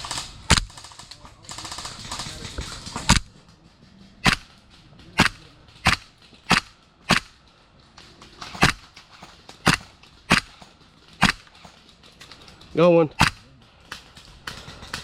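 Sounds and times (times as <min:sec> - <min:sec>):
airsoft rifle shots: 0:00.0 - 0:03.4, 0:04.2 - 0:07.4, 0:08.4 - 0:11.8, 0:13.1 - 0:15.0.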